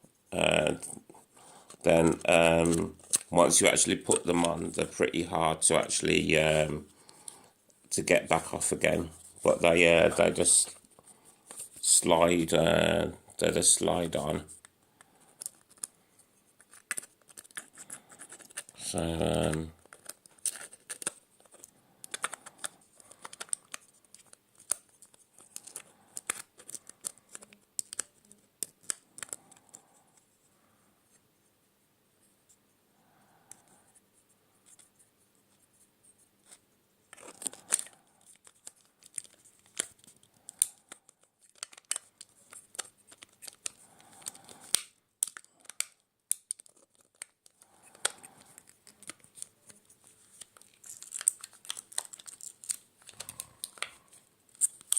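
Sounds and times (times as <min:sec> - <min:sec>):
plastic parts clicking together: 0:16.6 - 0:18.8, 0:19.4 - 0:29.7, 0:37.1 - 0:49.8, 0:50.4 - 0:54.9.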